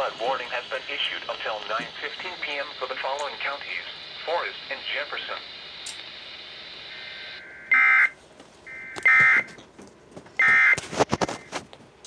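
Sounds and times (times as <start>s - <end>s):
radio hiss: 0.0s - 7.6s
crackling clicks: 1.5s - 3.4s, 5.3s - 6.2s.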